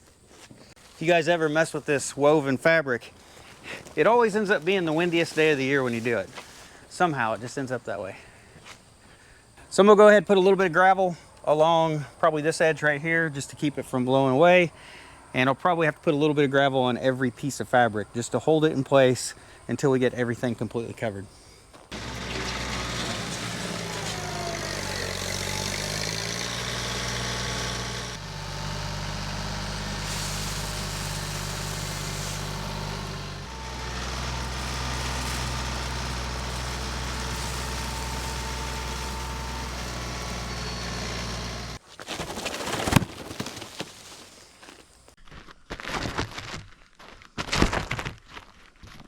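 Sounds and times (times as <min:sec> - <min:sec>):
tractor engine running: 0:21.9 - 0:41.8
knocks and clatter: 0:22.0 - 0:24.4.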